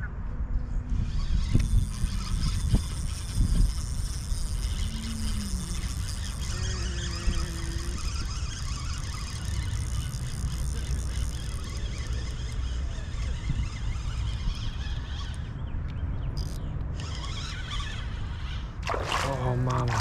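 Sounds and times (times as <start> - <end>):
wind on microphone: 0.1 - 15.2
river water rushing: 18.8 - 20.0.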